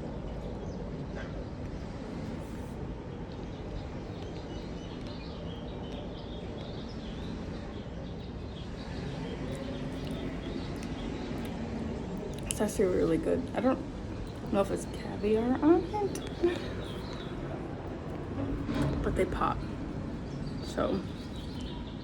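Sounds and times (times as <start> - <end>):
steady background rumble: 0.0 - 22.0.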